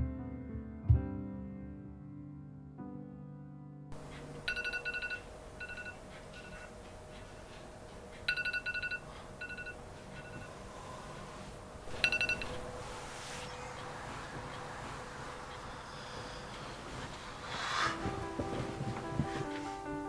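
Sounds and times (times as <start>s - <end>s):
faint steady hum: 3.9s - 20.0s
electronic telephone ringtone: 4.1s - 6.7s, 8.3s - 10.6s, 11.9s - 13.0s.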